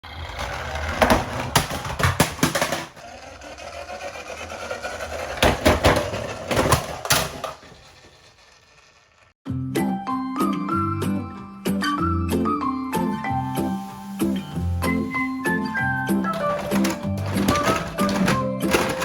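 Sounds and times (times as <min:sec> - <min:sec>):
rolling rattle: 0:00.0 - 0:09.4, 0:15.1 - 0:19.0
toy cars clattering on plastic: 0:00.2 - 0:09.3, 0:16.2 - 0:19.0.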